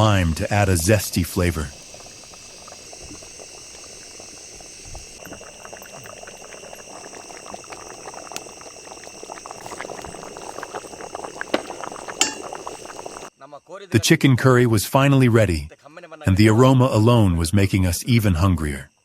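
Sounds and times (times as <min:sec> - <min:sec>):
curry bubbling and popping in a pot: 0:00.0 - 0:13.3.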